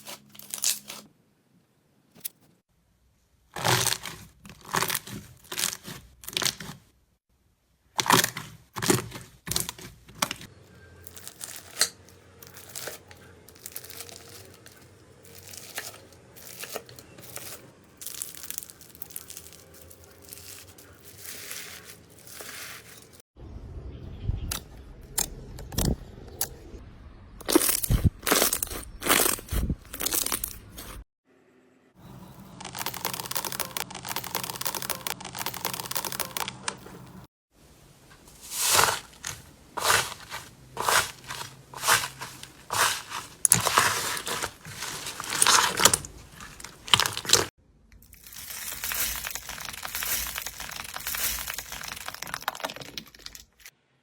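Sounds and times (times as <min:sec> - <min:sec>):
slime crackling and popping: 0:38.6 - 0:47.5.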